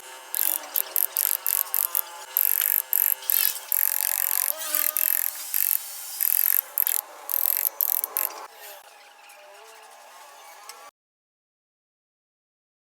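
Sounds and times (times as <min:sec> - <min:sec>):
power tool cutting wood: 0:00.0 - 0:08.5.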